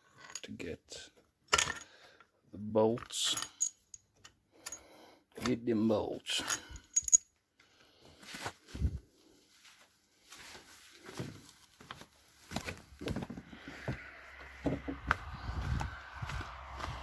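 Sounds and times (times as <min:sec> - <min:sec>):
handling small hardware: 0:01.2 - 0:02.0, 0:06.4 - 0:07.4
low steady rumble: 0:13.9 - 0:17.0.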